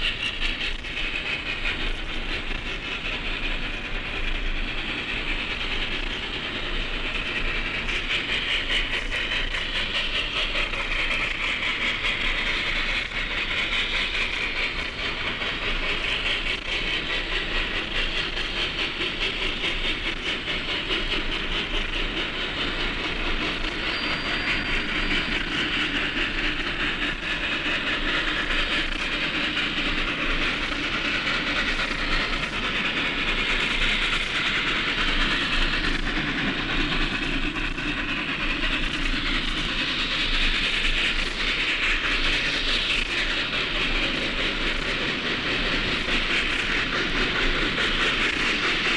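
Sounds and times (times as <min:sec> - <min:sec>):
steam locomotive exhaust: 0:00.0 - 0:48.9.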